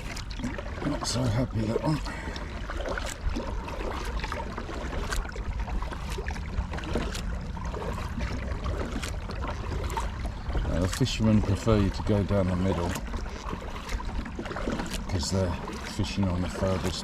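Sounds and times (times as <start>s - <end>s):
steady low rumble: 0.0s - 13.2s
paddle splashing water: 0.0s - 17.0s.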